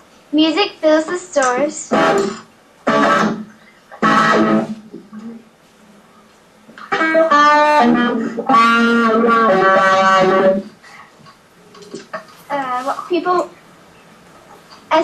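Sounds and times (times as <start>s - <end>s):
electric guitar playing: 1.9s - 5.4s, 6.8s - 10.8s.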